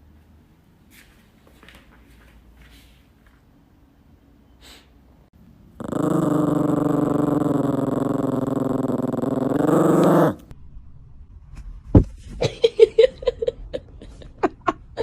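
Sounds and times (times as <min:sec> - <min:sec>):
dog growling: 0:05.8 - 0:10.5.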